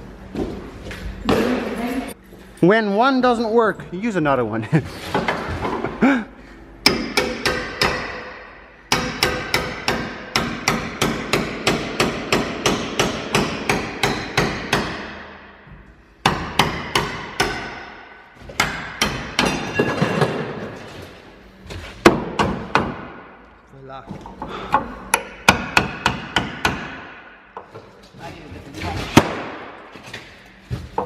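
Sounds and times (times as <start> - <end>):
hammer striking metal: 6.8 - 15.4, 16.2 - 20.4, 24.7 - 27.6.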